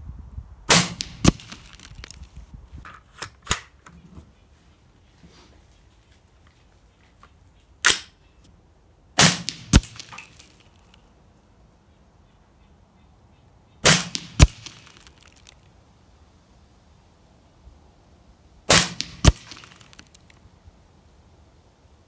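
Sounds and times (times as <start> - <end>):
suppressed gunshots: 0.7 - 1.6, 9.2 - 10.2, 13.8 - 14.8, 18.7 - 19.8.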